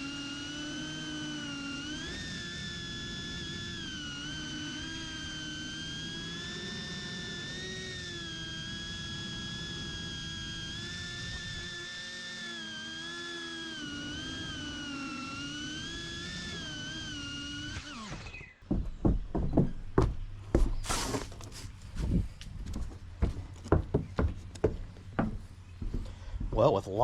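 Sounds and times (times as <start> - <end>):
drone motors whining: 0.0 - 26.2
irregular knocks and thunks: 18.6 - 21.4, 22.0 - 26.6.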